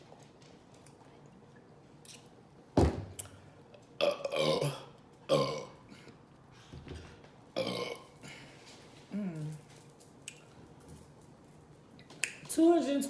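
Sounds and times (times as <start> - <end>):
woman burping: 4.0 - 6.0, 7.6 - 8.1.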